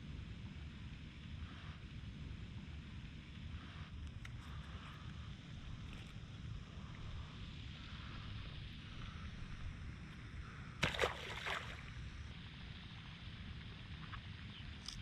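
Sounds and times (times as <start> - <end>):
sharp clicks or splashes: 10.8 - 11.9.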